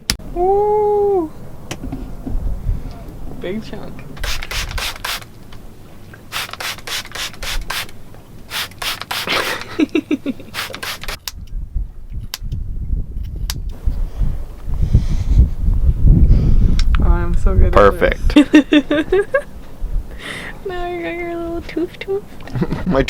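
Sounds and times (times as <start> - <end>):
scissors snipping hair: 4.2 - 5.3, 10.6 - 11.4.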